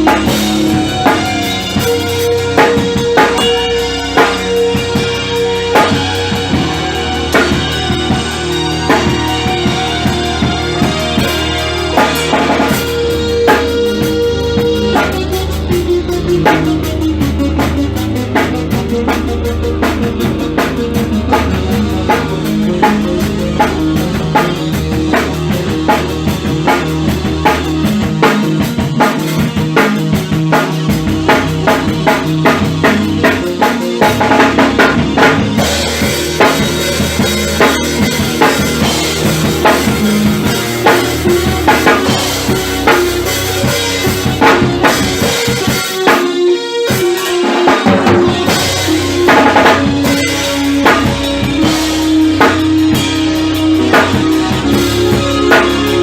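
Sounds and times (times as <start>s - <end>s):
drum kit beat: 0.0s - 56.0s
sustained instrument notes: 3.4s - 25.8s.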